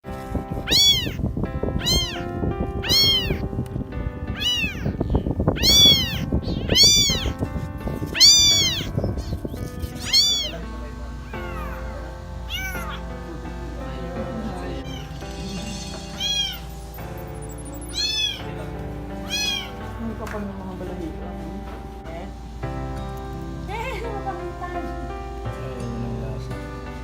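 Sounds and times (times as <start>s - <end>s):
background music: 0.0s - 27.0s
cat meowing: 0.6s - 3.6s, 4.3s - 13.2s, 14.4s - 16.8s, 17.6s - 20.0s.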